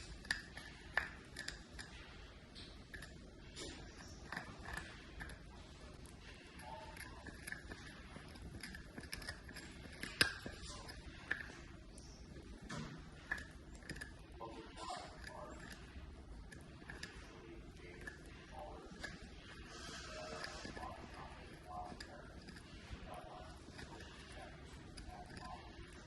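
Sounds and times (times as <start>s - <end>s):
puppy gnawing antler: 0.0s - 26.0s.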